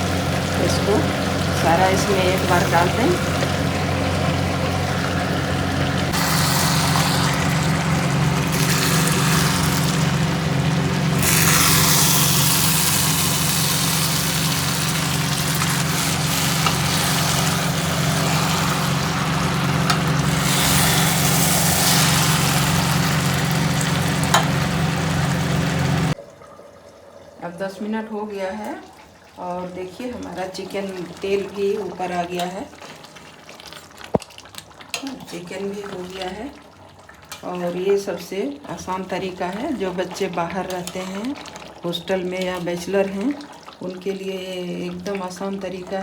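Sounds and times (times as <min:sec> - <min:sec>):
food sizzling in hot oil: 0:00.0 - 0:26.2
low mechanical hum: 0:00.0 - 0:32.6.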